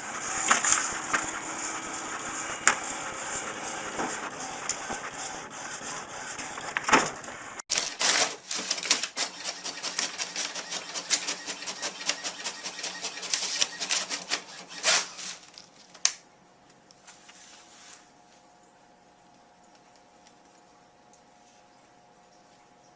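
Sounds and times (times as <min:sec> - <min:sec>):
printer whirring: 0:00.0 - 0:15.4
printer clicking and rattling: 0:00.3 - 0:01.9, 0:02.5 - 0:15.1.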